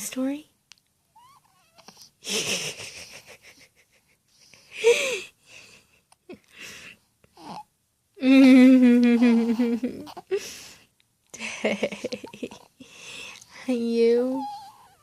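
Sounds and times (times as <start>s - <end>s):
baby vocalizing: 9.4s - 10.3s.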